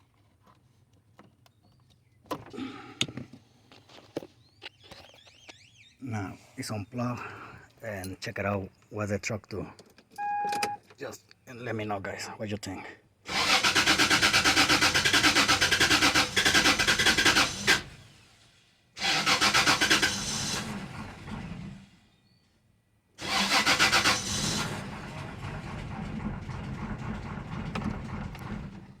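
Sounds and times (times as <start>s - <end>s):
engine cranking by starter: 13.3s - 22.1s, 23.2s - 29.0s.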